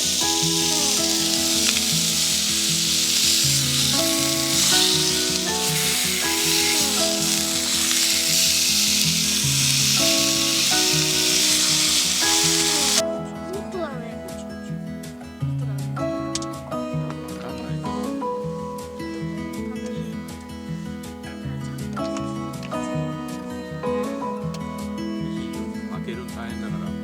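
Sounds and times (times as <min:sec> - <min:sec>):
food sizzling in a pan: 0:00.0 - 0:13.0
background music with held notes: 0:00.0 - 0:27.0.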